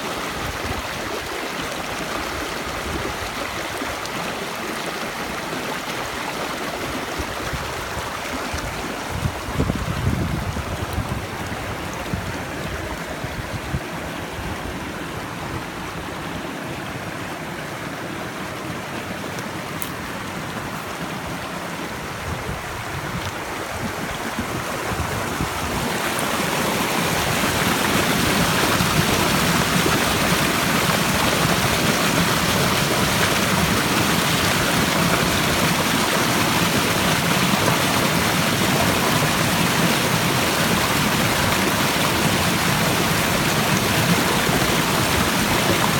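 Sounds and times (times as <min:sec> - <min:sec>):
stream water rushing: 0:00.0 - 0:45.9.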